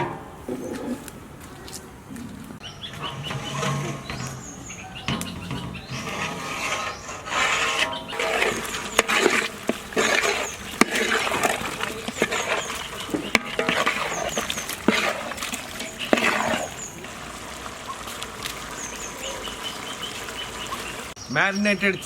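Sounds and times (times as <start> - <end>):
spoon knocking against metal pot: 2.9 - 6.3, 7.8 - 16.8
chicken sizzling in a pot: 3.0 - 21.2.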